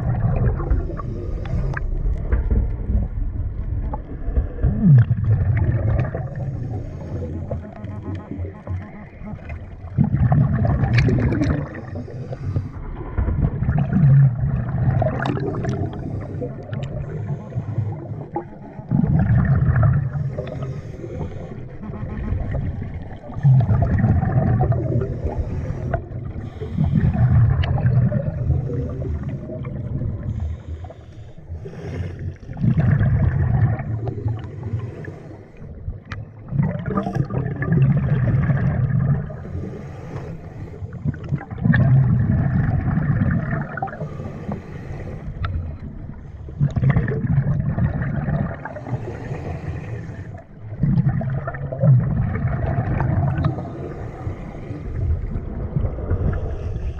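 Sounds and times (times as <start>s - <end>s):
exhaled air bubbling: 0.0s - 56.9s
diver breathing through regulator: 0.6s - 2.2s, 6.1s - 8.0s, 11.1s - 13.1s, 15.4s - 18.4s, 20.0s - 22.5s, 23.2s - 32.9s, 33.8s - 35.9s, 39.2s - 41.4s, 43.8s - 46.8s, 48.6s - 50.8s, 53.3s - 56.9s.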